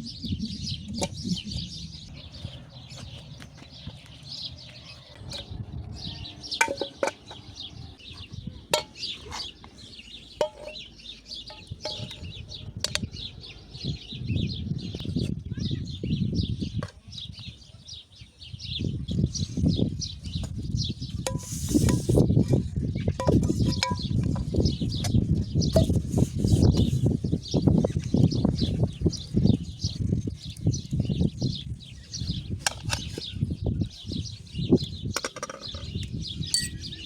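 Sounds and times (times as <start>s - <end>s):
low rumbling noise: 0.0s - 6.6s
small birds chirping: 0.0s - 37.0s.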